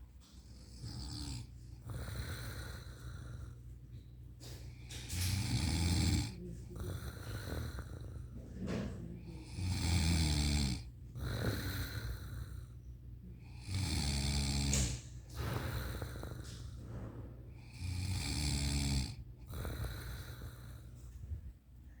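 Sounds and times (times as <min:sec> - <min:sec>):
soft breathing: 0:00.0 - 0:09.9, 0:10.8 - 0:13.8, 0:14.6 - 0:22.0
woman snoring heavily: 0:00.7 - 0:03.6, 0:05.0 - 0:08.3, 0:09.2 - 0:12.7, 0:13.4 - 0:16.6, 0:17.6 - 0:20.9.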